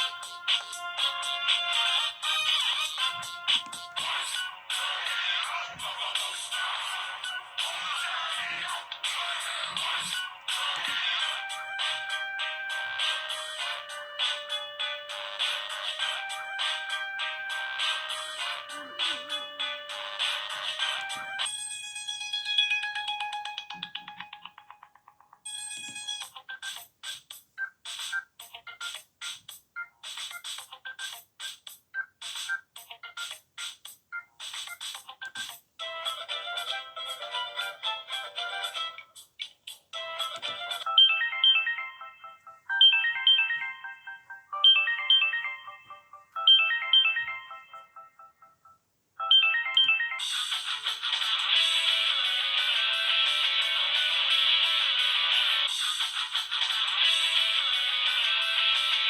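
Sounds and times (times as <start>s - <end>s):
phone ringtones playing: 9.5s - 29.0s, 40.0s - 55.8s, 56.9s - 59.0s.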